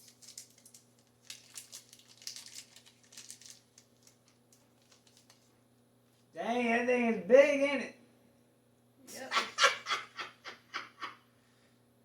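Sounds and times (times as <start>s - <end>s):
plastic wrapper crinkling: 0.0s - 6.3s.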